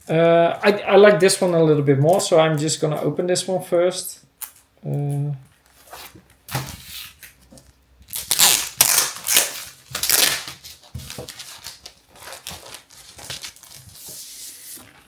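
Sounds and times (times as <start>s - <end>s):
package being torn open: 8.1s - 10.6s
paper rustling and crackling: 8.3s - 15.0s.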